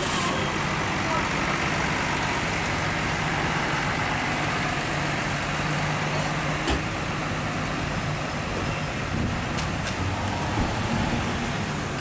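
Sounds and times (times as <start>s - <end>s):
large vehicle engine humming: 0.0s - 12.0s
roadside traffic: 0.0s - 12.0s.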